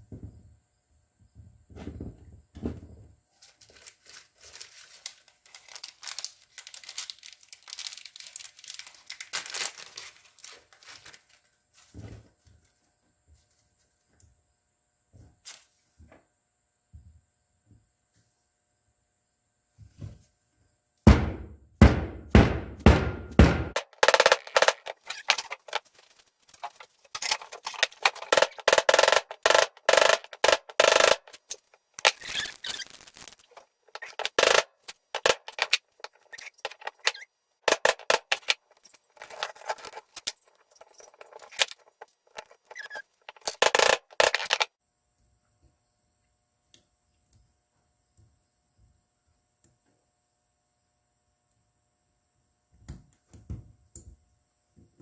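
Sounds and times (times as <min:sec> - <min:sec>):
sharp metal knocks: 0:21.1 - 0:24.8.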